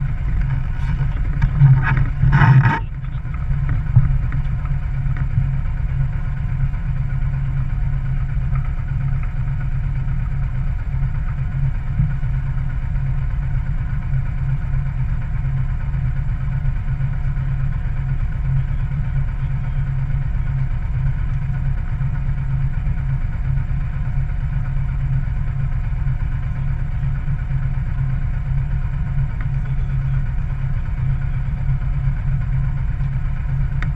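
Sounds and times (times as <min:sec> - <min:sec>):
rush of noise: 0:00.0 - 0:06.7
boat engine running: 0:00.0 - 0:33.9.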